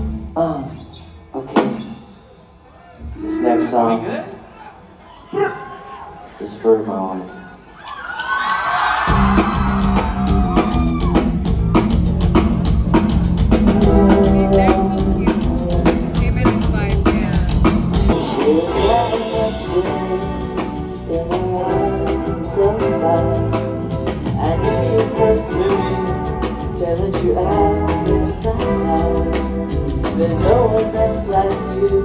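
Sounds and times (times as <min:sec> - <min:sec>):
live rock band playing: 0:09.0 - 0:32.0.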